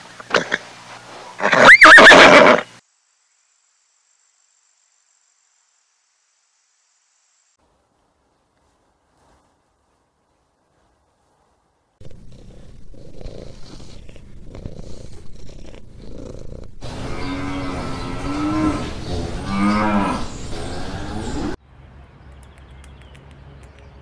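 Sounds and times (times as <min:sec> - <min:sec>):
cow mooing: 0:16.8 - 0:21.6.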